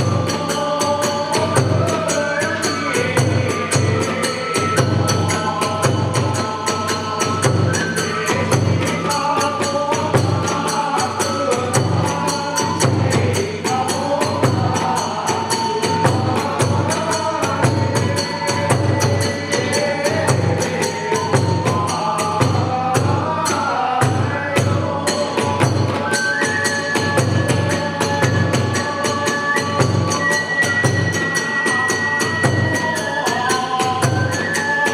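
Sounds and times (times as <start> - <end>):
bamboo flute melody: 0.0 - 23.8, 24.6 - 34.9
hand cymbals clashing: 0.0 - 34.9.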